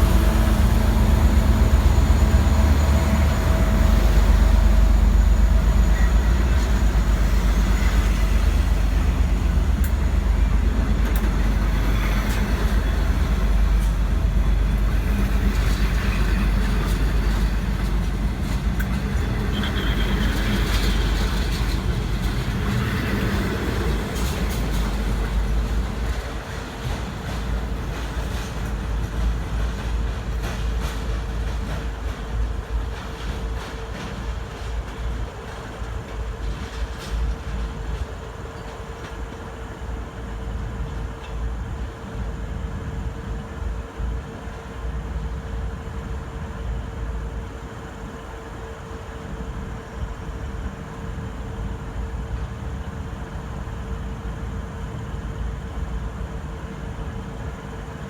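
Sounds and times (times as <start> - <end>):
train low rumble: 0.0 - 58.0.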